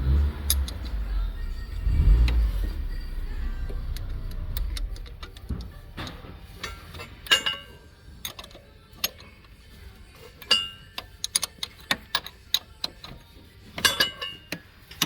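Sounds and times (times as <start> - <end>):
socket wrench clinking on metal: 6.6 - 9.5, 10.4 - 13.2, 13.8 - 15.0.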